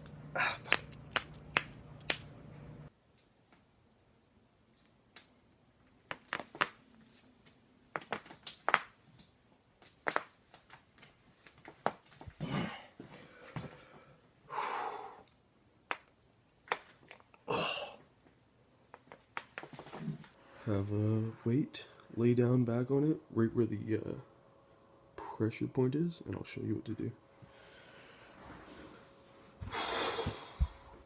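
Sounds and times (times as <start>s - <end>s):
person exhaling: 0.3s - 0.8s, 12.4s - 15.3s, 29.6s - 31.0s
back joints cracking: 15.9s - 20.3s.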